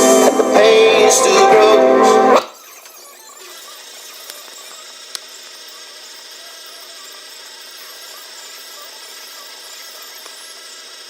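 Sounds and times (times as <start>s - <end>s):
boombox hiss: 0.0s - 2.6s
faint machine whir: 0.0s - 11.0s
thin steady tones: 0.0s - 11.0s.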